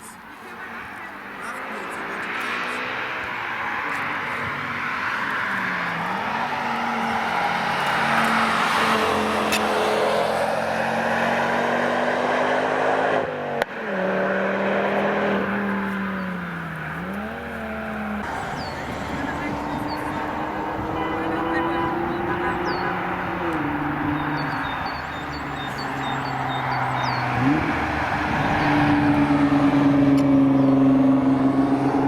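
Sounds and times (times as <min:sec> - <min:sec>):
car engine running: 0:14.9 - 0:31.4.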